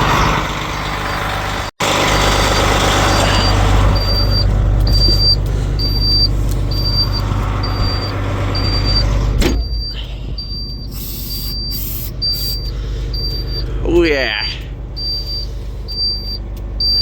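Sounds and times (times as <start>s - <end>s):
diesel truck engine idling: 0.0s - 17.0s
engine knock: 0.0s - 17.0s
high-pitched beeping: 2.5s - 17.0s
short air hisses: 10.9s - 12.6s.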